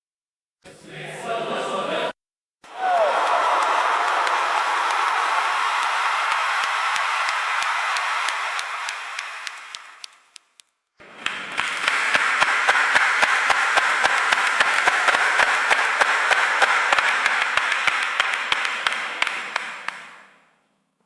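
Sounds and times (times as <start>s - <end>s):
sharp clicks and taps: 9.4s - 14.2s.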